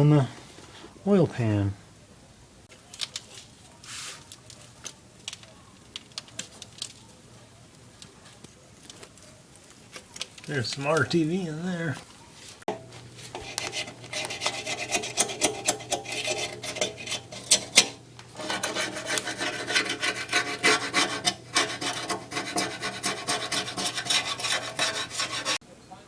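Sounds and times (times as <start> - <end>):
hand scraping metal: 12.6 - 25.6.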